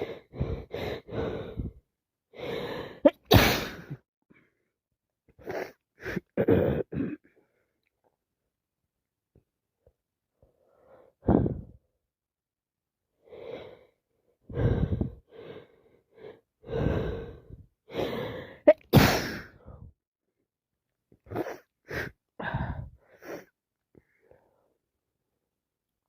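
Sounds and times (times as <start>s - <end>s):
person gasping breaths: 0.0s - 1.8s, 10.5s - 11.8s, 13.3s - 19.9s, 21.4s - 24.8s
person sneezing: 3.1s - 4.0s, 18.7s - 19.6s.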